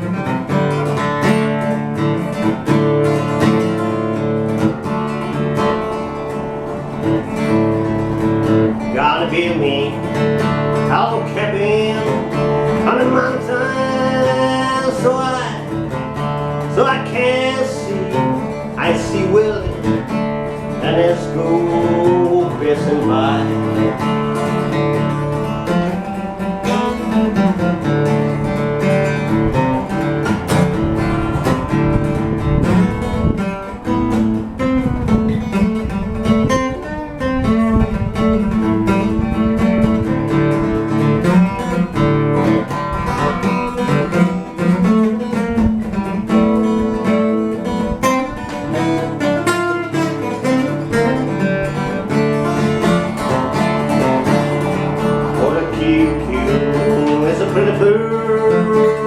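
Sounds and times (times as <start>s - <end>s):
acoustic guitar folk tune: 0.0s - 59.0s.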